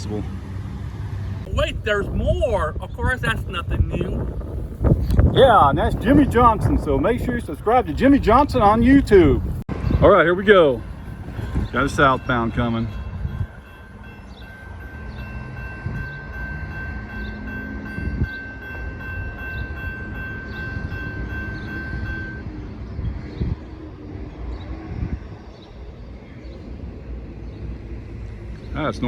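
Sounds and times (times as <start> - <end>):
low train rumble: 0.0 - 29.0
railroad crossing bell ringing: 10.0 - 23.7.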